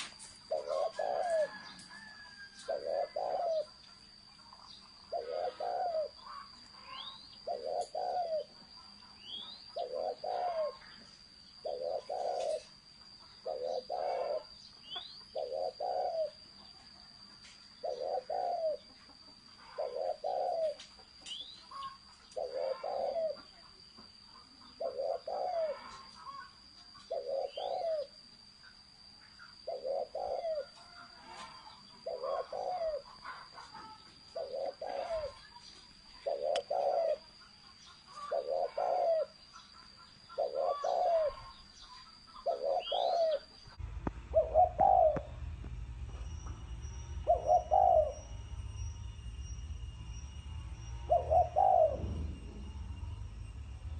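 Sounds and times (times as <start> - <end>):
dove cooing: 0.0 - 3.8, 5.1 - 8.6, 9.3 - 11.0, 11.6 - 12.8, 13.4 - 16.4, 17.8 - 19.0, 19.6 - 20.9, 21.7 - 23.5, 24.7 - 28.2, 29.6 - 35.5, 36.2 - 45.6, 46.2 - 49.4, 50.8 - 53.9
faint rising chirps: 0.0 - 53.9.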